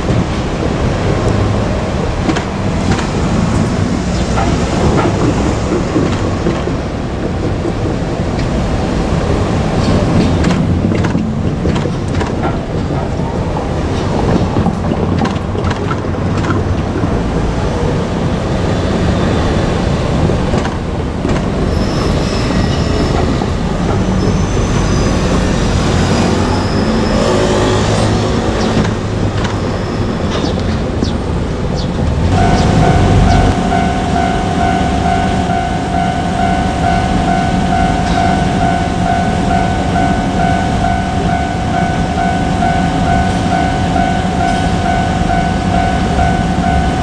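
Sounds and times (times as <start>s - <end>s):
diesel engine hum: 0.0s - 47.0s
wheels clicking on rails: 0.0s - 47.0s
high wheel squeal: 21.5s - 47.0s.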